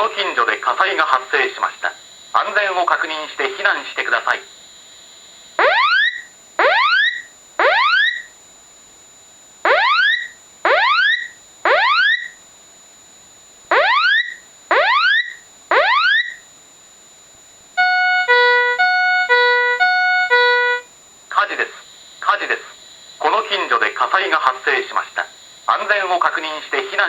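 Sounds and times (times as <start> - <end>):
fire alarm whooping tone: 5.6 - 8.4, 9.7 - 12.4, 13.7 - 16.5, 17.8 - 20.9
alarm chime of stepped tones: 17.8 - 20.9.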